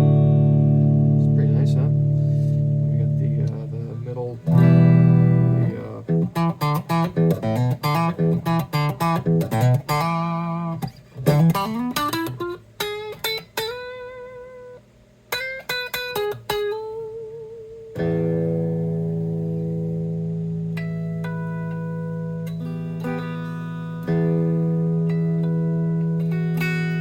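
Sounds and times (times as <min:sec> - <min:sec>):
electric guitar: 0:00.0 - 0:27.0.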